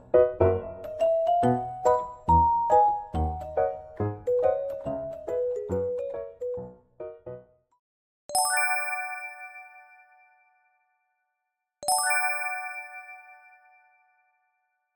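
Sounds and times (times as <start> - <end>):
music: 0.0 - 14.9
bright bell-like chime: 8.3 - 10.7, 11.8 - 14.4.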